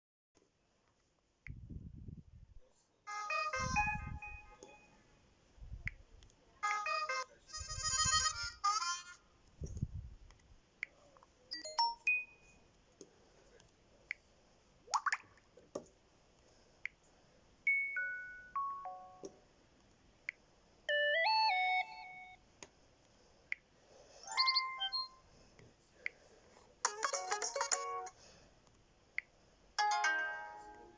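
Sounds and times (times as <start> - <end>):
phone notification tones: 3.1 - 4.9, 24.3 - 25.1.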